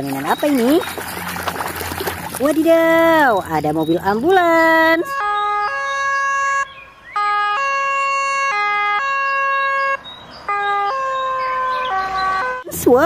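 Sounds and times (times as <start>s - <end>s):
toy two-tone siren: 5.0s - 12.6s.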